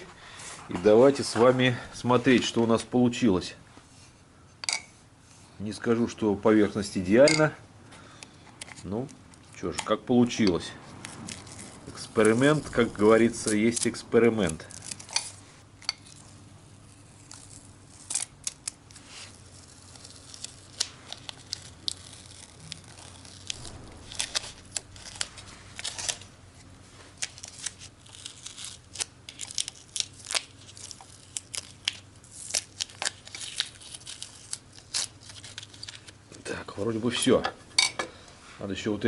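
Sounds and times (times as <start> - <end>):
faint steady hum: 0.0 - 39.0
paper rustling and tearing: 11.0 - 15.4, 17.1 - 36.2.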